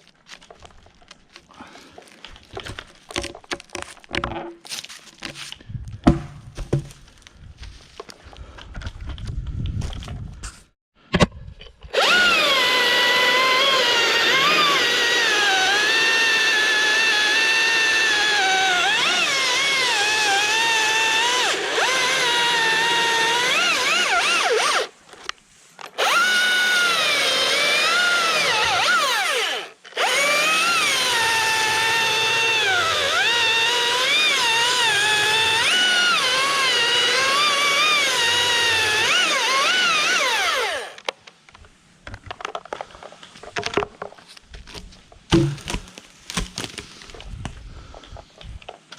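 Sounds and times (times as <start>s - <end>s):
battery chainsaw cutting wood: 11.9s - 24.9s, 26.0s - 41.0s.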